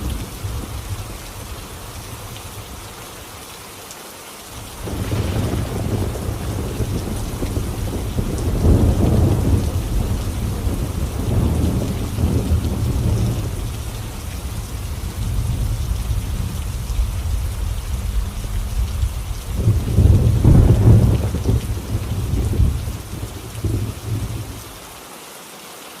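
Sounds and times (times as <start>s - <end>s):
rolling thunder: 0.0s - 2.8s, 4.7s - 24.6s
rain falling steadily: 0.0s - 26.0s.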